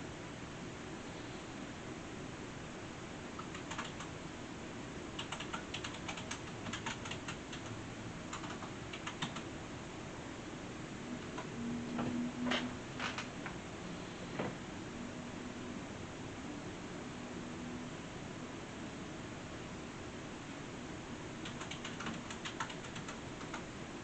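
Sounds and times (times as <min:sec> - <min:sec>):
computer keyboard key clicks: 0:03.4 - 0:04.1, 0:05.2 - 0:07.7, 0:08.3 - 0:09.4, 0:21.4 - 0:23.6
low hum: 0:09.6 - 0:21.2.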